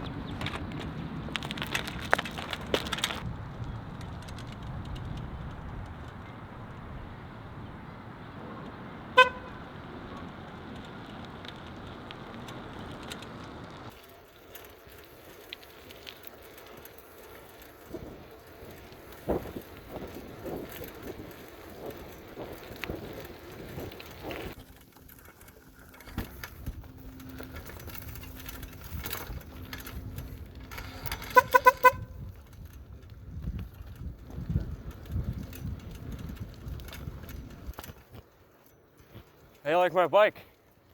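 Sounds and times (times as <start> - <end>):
bicycle electric horn beeps: 9.1 - 9.7, 30.7 - 32.3.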